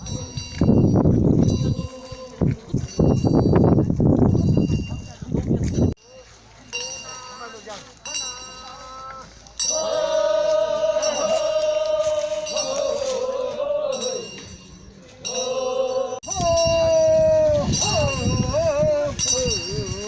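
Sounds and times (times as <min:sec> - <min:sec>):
man singing mournful notes: 0:08.8 - 0:20.0.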